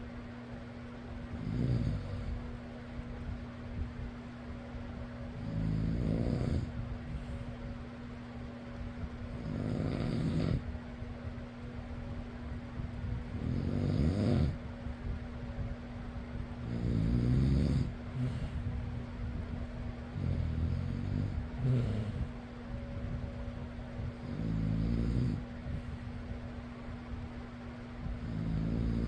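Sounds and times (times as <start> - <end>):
electric fan humming: 0.0 - 29.0
person snoring: 1.4 - 2.4, 5.4 - 6.8, 9.4 - 10.6, 13.4 - 14.6, 16.6 - 18.7, 20.1 - 22.4, 24.2 - 25.4, 28.2 - 29.0.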